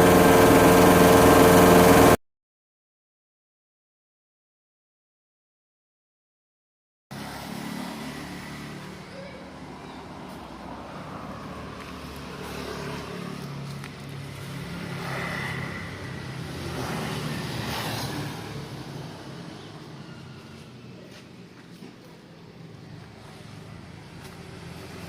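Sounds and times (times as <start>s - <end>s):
grass chopper machine running: 0.0s - 2.2s, 7.2s - 20.7s, 22.9s - 25.0s.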